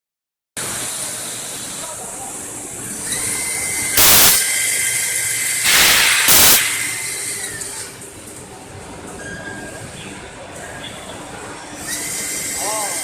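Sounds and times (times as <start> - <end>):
thin high whine: 4.0 - 4.4, 5.6 - 8.0
machine hissing: 4.0 - 8.0.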